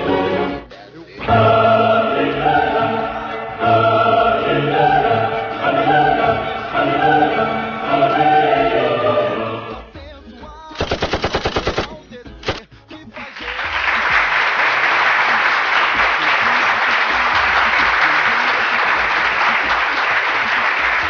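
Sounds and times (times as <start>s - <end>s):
choir singing held notes: 0.0s - 10.0s.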